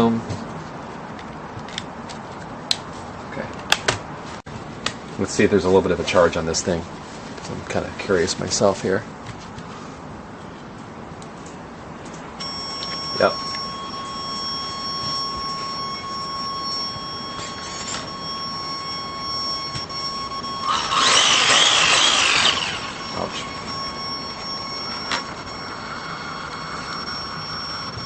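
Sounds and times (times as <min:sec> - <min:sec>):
electric toy car motor whining: 0:15.1 - 0:19.1, 0:20.0 - 0:28.0.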